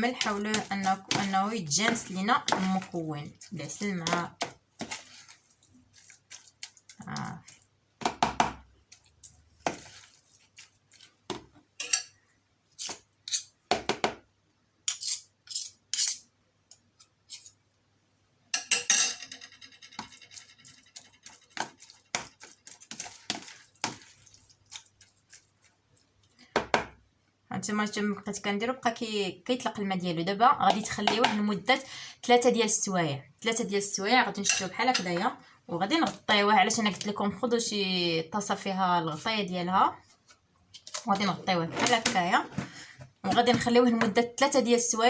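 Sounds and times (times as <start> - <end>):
spoon scraping and clinking bowl: 0.0 - 4.2, 11.8 - 12.2, 12.8 - 13.5, 14.9 - 16.3, 17.3 - 17.6, 18.6 - 25.2.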